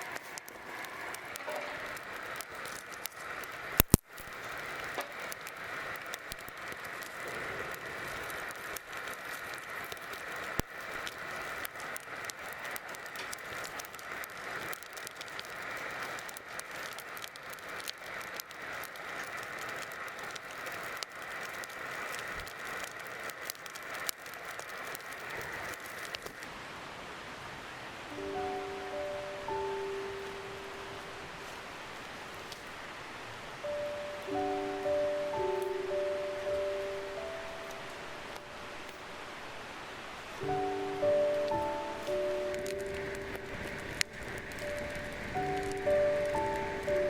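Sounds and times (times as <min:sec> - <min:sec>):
campfire crackling and popping: 0:00.0 - 0:27.4, 0:28.0 - 0:47.0
high-pitched hiss: 0:24.6 - 0:47.0.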